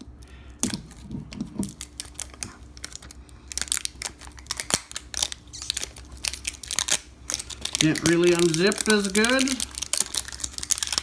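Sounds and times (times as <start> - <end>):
plastic wrapping crinkling: 0.6 - 11.0.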